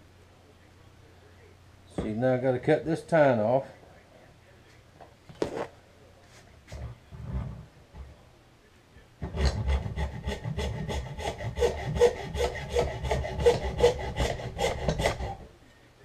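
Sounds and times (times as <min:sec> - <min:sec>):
handsaw cutting antler: 0:09.2 - 0:15.5.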